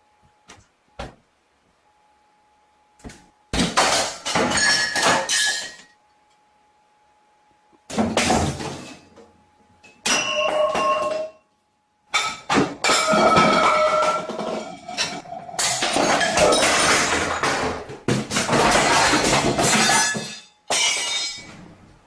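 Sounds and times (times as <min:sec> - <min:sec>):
ringing tones: 0:10.0 - 0:11.5
loud crashing and clattering: 0:12.5 - 0:21.6.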